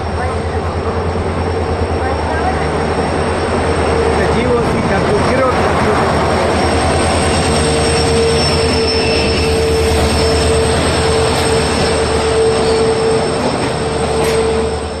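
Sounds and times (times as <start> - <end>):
train wheels rumbling on rail: 0.0 - 15.0
wheel squeal: 7.0 - 15.0.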